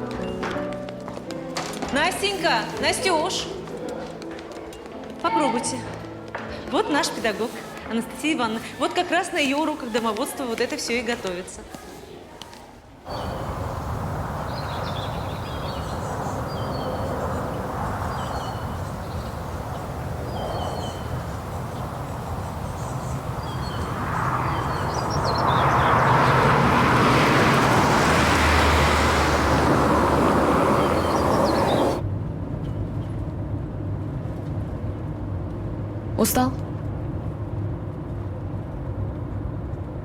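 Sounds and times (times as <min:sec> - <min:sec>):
birds chirping: 0:13.1 - 0:32.0
car driving past: 0:13.1 - 0:32.0
low car interior rumble: 0:13.1 - 0:32.0.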